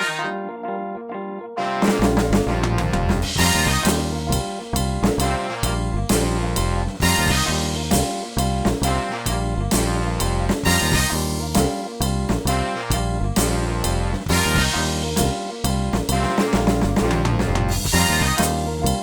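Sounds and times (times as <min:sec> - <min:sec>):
keyboard chords: 0:00.0 - 0:19.0
bass line: 0:01.8 - 0:19.0
steady drum beat: 0:01.8 - 0:19.0.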